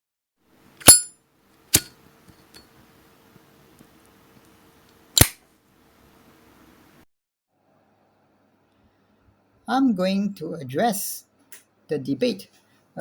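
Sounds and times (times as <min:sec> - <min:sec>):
lighter lid clicking: 0:05.2 - 0:05.4.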